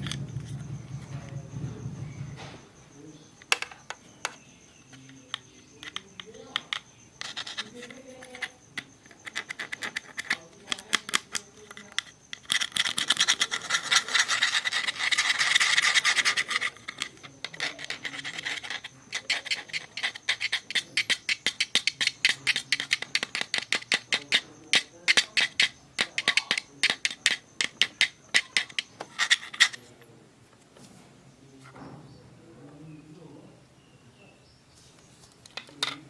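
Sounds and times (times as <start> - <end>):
hands rubbing packaging: 9.2 - 29.9.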